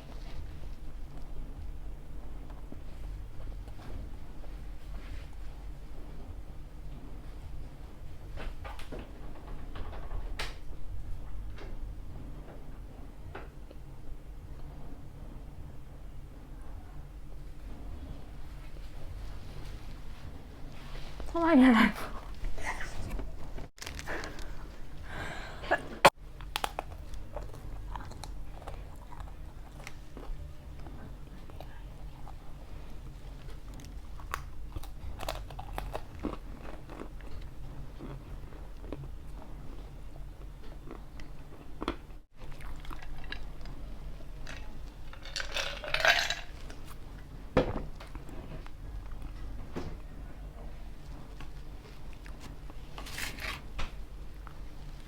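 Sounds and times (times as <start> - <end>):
chewing and biting food: 26.3 - 47.0, 51.0 - 53.7.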